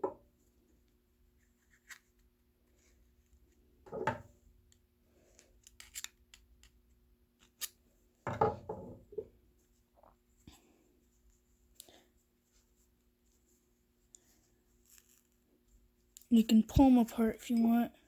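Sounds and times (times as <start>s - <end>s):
light clicks and scrapes: 11.3s - 15.4s.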